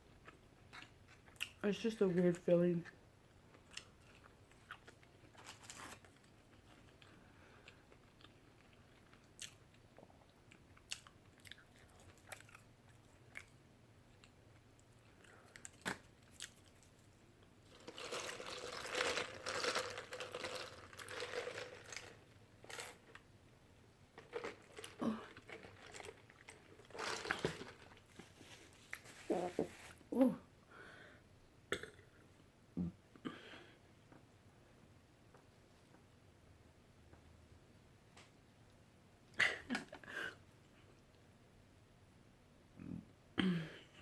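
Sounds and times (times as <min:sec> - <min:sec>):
person chewing crunchy food: 0:03.5 - 0:13.6, 0:14.2 - 0:17.0, 0:17.7 - 0:23.2, 0:24.2 - 0:29.4.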